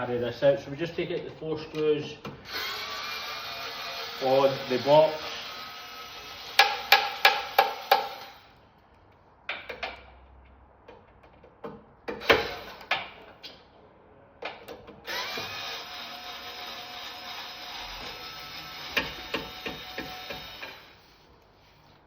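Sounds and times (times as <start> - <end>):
electric screwdriver motor running: 2.5 - 6.8, 15.1 - 21.0
sharp clicks and knocks: 9.5 - 10.2.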